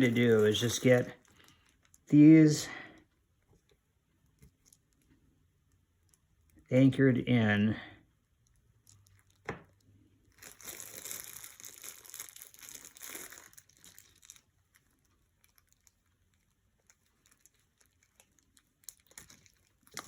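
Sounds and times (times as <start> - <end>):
crinkling rustle: 0.0 - 2.1, 3.0 - 6.6, 8.4 - 20.0.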